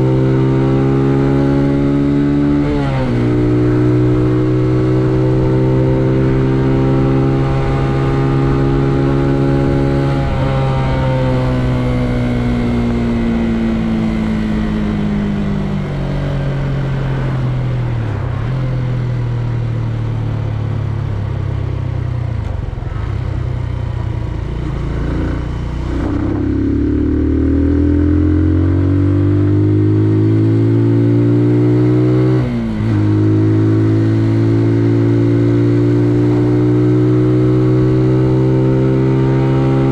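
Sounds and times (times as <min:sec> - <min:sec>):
motorcycle engine running: 0:01.6 - 0:30.4.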